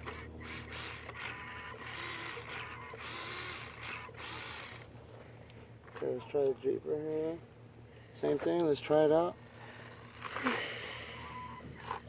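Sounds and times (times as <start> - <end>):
small electric motor whirring: 0.0 - 4.9, 8.3 - 12.0.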